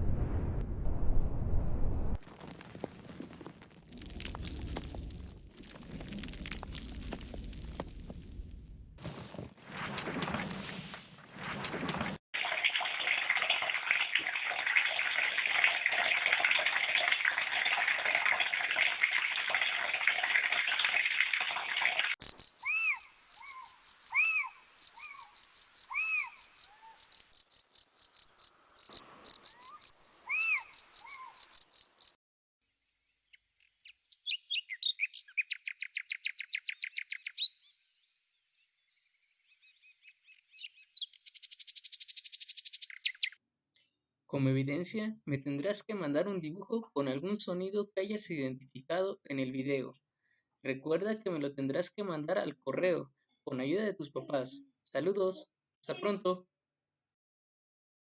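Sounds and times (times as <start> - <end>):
running water: 12.4 - 24.1
bird calls: 22.2 - 32.1, 33.8 - 37.7
crickets chirping: 22.2 - 32.1.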